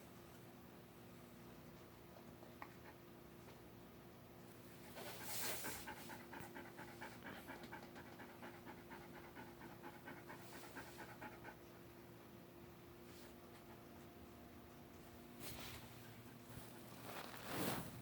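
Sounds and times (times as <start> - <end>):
dog panting: 4.8 - 12.4, 13.1 - 15.2.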